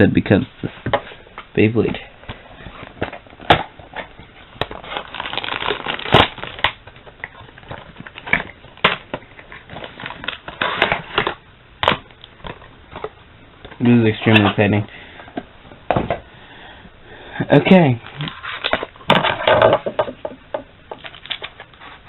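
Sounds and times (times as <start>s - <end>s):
packaging crinkling and crackling: 2.6s - 14.6s, 20.9s - 22.0s.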